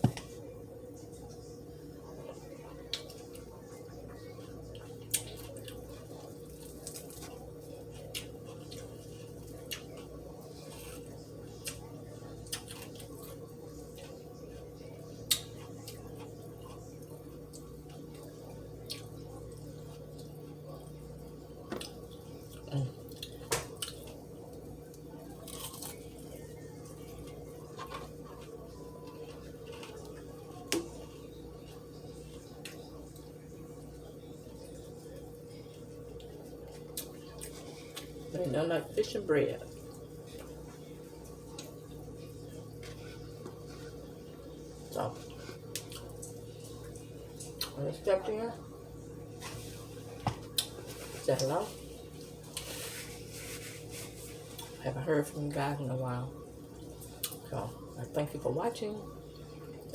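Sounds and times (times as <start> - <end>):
low background hum: 0.0 - 59.9
chewing clicks and smacks: 4.7 - 14.2, 15.2 - 16.8, 17.5 - 20.4, 36.1 - 38.2, 45.3 - 47.8, 57.0 - 57.5
utensil on a plate: 49.4 - 54.8.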